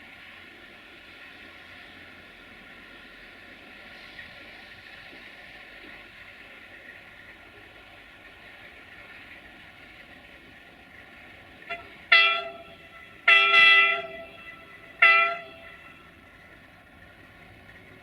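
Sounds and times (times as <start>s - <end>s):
locomotive air horn blasts: 11.7s - 16.2s.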